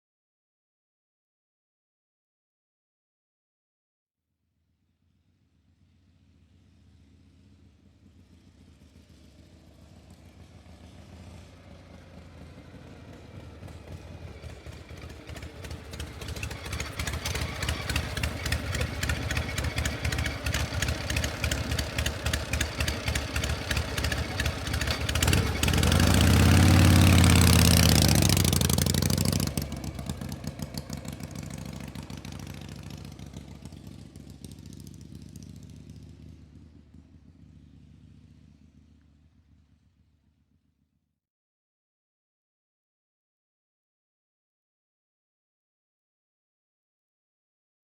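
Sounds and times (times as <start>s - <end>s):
vehicle engine passing by: 5.4s - 40.3s.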